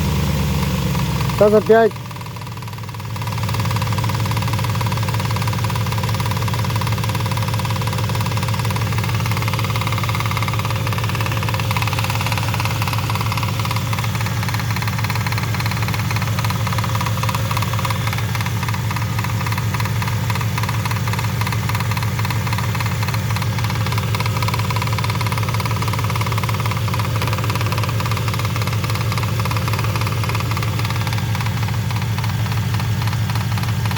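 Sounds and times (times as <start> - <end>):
car engine idling: 0.0 - 33.9
knocking rattle under hood: 0.6 - 33.9.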